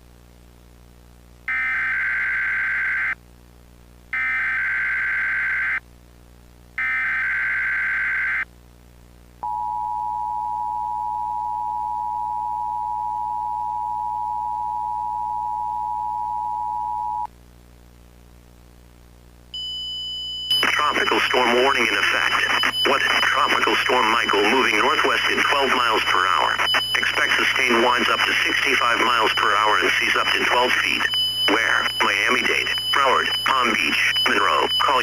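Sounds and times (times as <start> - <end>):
screeching digital data bursts: 20.6 - 35.0.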